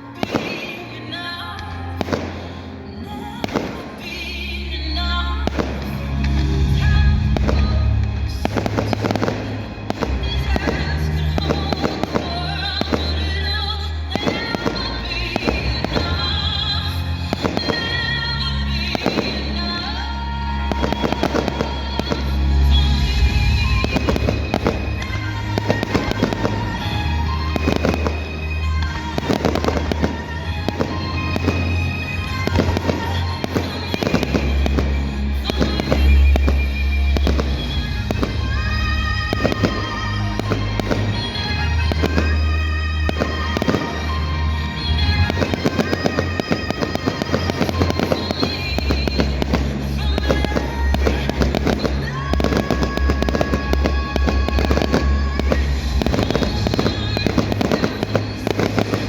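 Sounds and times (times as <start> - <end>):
fireworks bursting and crackling: 0.0 - 59.0.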